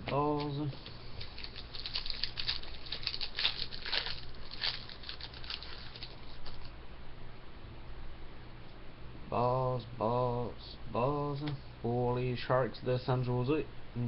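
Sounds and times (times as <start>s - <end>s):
trading cards rustling: 0.1s - 6.7s.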